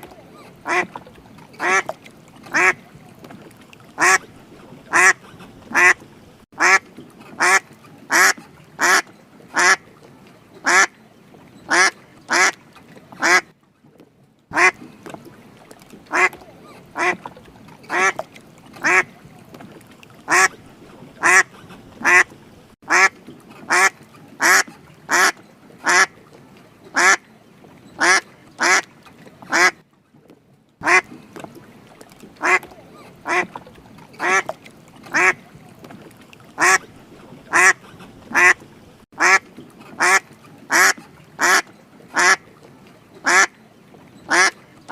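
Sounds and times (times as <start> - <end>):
duck quacking: 0.0 - 0.9, 1.6 - 1.9, 2.5 - 2.8, 4.0 - 4.2, 4.9 - 6.0, 6.6 - 6.8, 7.4 - 9.0, 9.6 - 9.8, 10.6 - 10.9, 11.7 - 12.6, 13.2 - 13.4, 14.5 - 14.8, 16.1 - 16.4, 17.0 - 17.2, 17.9 - 18.2, 18.8 - 19.1, 20.3 - 20.5, 21.2 - 22.3, 22.9 - 23.1, 23.7 - 26.1, 27.0 - 27.2, 28.0 - 28.8, 29.5 - 29.8, 30.8 - 31.1, 32.4 - 33.5, 34.2 - 34.5, 35.1 - 35.4, 36.6 - 36.8, 37.5 - 38.6, 39.2 - 39.4, 40.0 - 41.6, 42.2 - 42.4, 43.3 - 43.5, 44.3 - 44.5.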